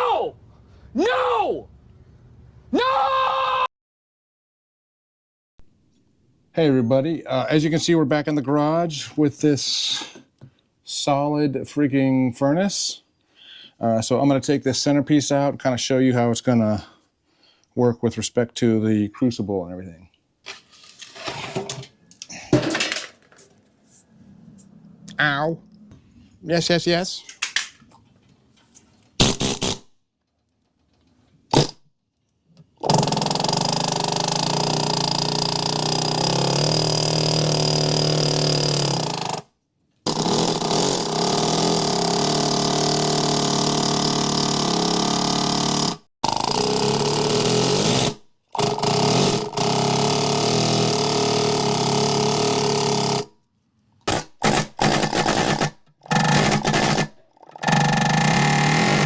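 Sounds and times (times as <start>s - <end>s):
handheld power tool running: 32.8s - 39.4s, 40.1s - 53.3s, 54.1s - 59.0s.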